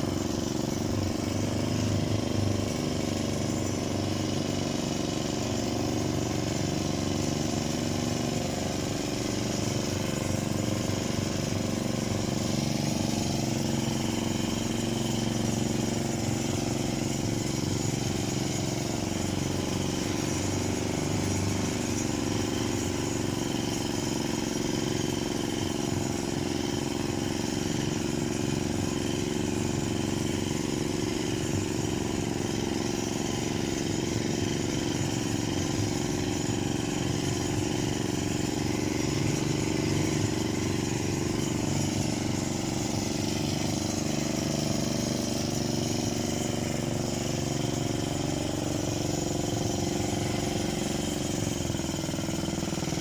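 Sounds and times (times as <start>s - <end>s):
chainsaw engine running: 0.0s - 53.0s.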